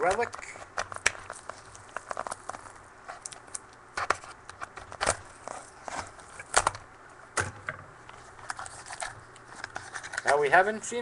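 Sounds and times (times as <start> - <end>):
card pack wrapper crackling: 0.0 - 6.8.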